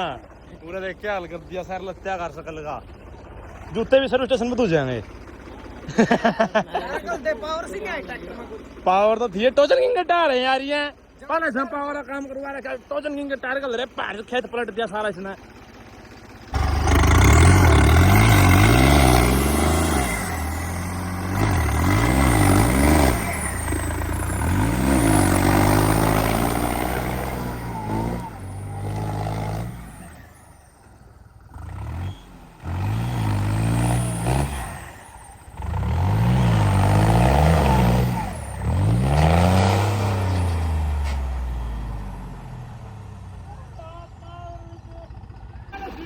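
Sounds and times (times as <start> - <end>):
tractor engine revving: 0.0 - 46.0.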